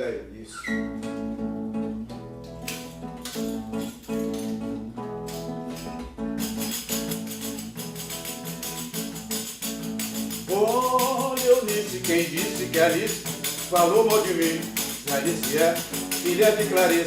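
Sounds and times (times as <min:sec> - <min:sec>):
acoustic guitar playing chords: 0:00.6 - 0:17.0
tambourine shaking: 0:05.3 - 0:17.0.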